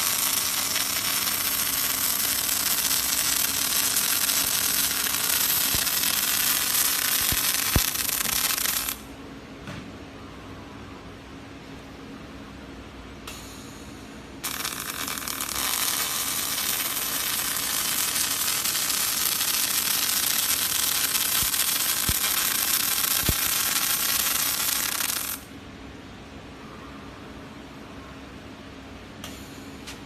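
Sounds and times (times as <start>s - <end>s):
welding arc crackling and hissing: 0.0s - 9.1s, 14.4s - 25.5s
low machine hum: 0.0s - 30.0s.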